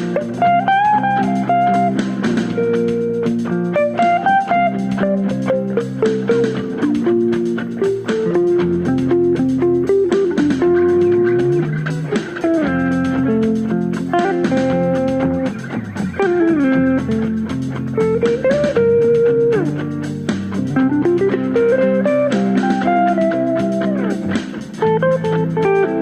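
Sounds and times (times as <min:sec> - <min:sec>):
guitar melody with bending notes: 0:00.0 - 0:26.0.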